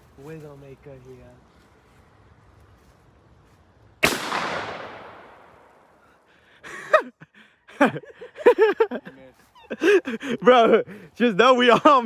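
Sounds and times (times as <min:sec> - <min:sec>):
gunshot with echo: 0:04.0 - 0:05.9.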